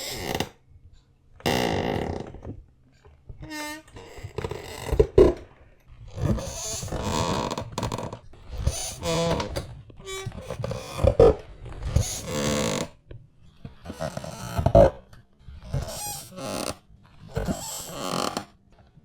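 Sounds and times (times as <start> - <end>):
chair squeaking and creaking: 0.0 - 0.6, 1.4 - 2.6, 3.4 - 18.6.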